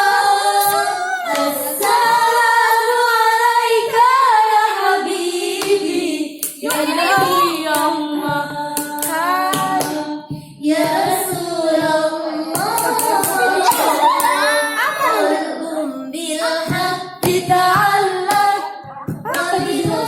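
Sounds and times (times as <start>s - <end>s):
woman singing devotional song: 0.0s - 20.0s
hand claps: 6.4s - 8.0s, 8.7s - 10.1s, 12.6s - 14.4s, 17.2s - 20.0s.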